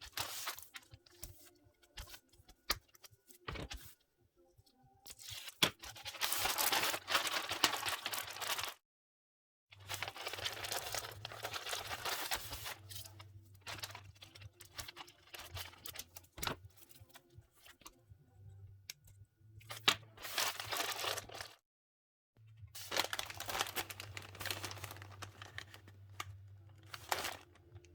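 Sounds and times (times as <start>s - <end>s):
paper rustling and crinkling: 0.0s - 4.0s, 5.0s - 8.8s, 9.8s - 18.0s, 19.6s - 21.6s, 22.8s - 27.9s.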